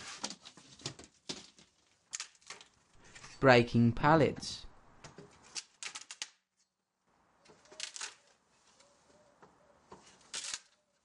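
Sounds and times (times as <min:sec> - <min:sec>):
wood cracking and splintering: 0:00.0 - 0:03.0.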